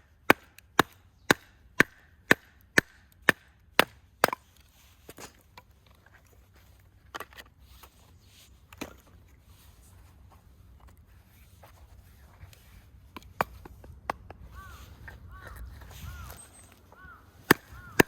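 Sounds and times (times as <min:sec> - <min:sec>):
firewood being chopped: 0:00.2 - 0:04.5, 0:13.2 - 0:14.4, 0:17.5 - 0:18.0.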